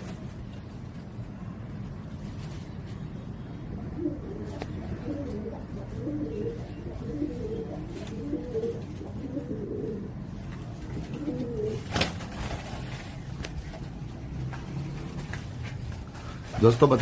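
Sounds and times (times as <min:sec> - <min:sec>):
pigeons cooing: 0:03.5 - 0:16.8.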